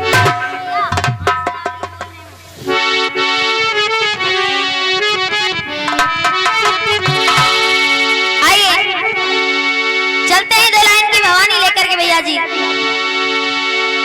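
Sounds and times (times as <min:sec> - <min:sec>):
hand drum strikes: 0:00.0 - 0:02.2, 0:05.9 - 0:08.3
thin reed melody: 0:00.0 - 0:10.4
harmonium chords: 0:00.0 - 0:14.0.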